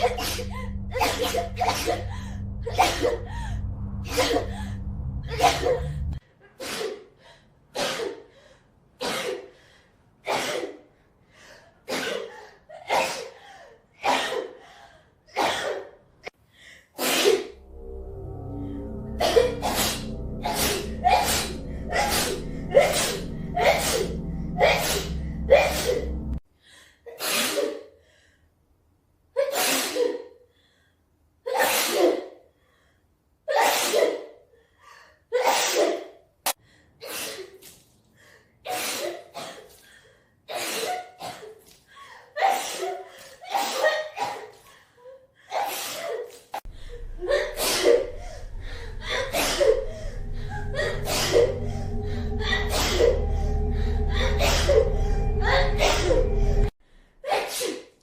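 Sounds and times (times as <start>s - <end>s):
low hum: 0.0s - 6.2s, 17.5s - 26.4s, 46.7s - 57.1s
person sneezing: 27.2s - 27.9s, 31.5s - 32.3s, 33.5s - 34.3s, 57.3s - 58.0s.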